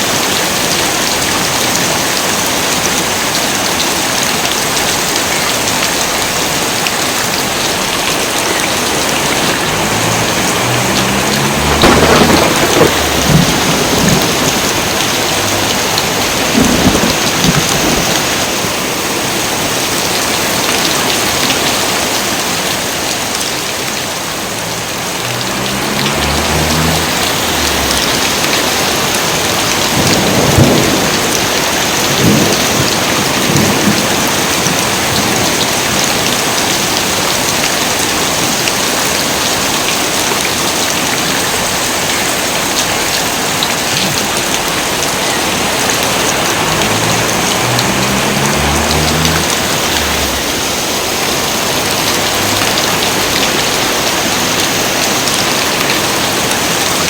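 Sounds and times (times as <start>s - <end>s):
heavy rain: 0.0s - 57.0s
thunder rumbling: 7.8s - 18.8s, 24.5s - 35.6s, 44.8s - 54.6s.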